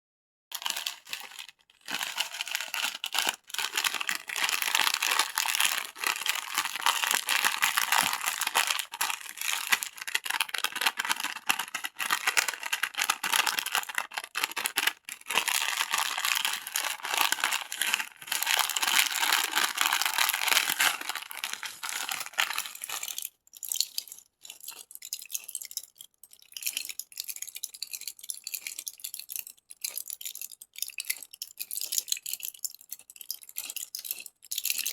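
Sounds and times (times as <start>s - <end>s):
plastic wrappers crinkling: 0.5s - 23.3s.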